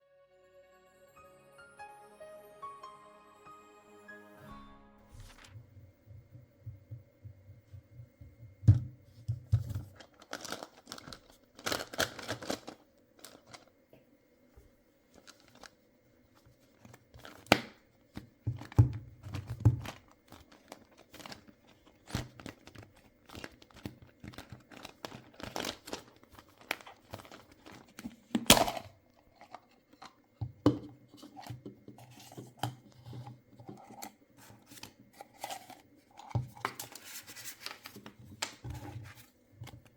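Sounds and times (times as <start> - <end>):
packaging torn and crinkled: 9.9 - 13.7, 19.8 - 28.8.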